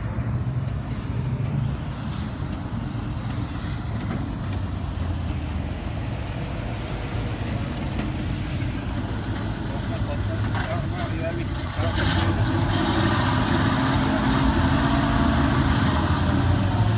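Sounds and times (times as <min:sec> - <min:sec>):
vehicle engine idling: 0:02.4 - 0:12.5.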